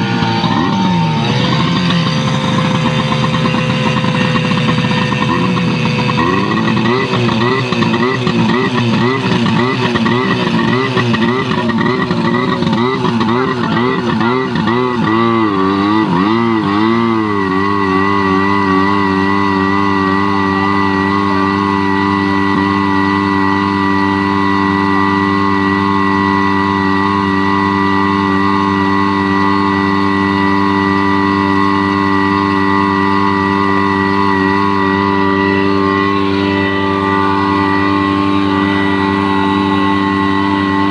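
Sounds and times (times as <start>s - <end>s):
pump engine running: 0.0s - 40.9s.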